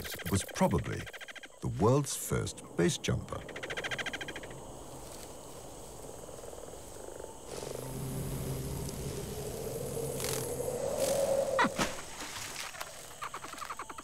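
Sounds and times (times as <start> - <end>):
frogs croaking: 0.0 - 14.0
insects: 0.0 - 14.0
low hum: 7.5 - 12.0.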